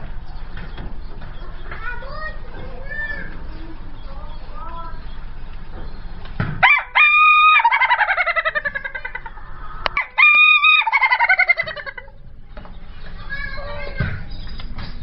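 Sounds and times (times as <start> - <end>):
rooster crowing: 6.6 - 12.1.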